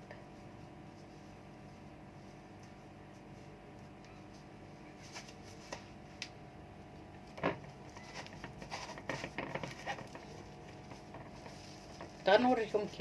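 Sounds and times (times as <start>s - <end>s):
rubbing and clattering: 7.4s - 13.0s.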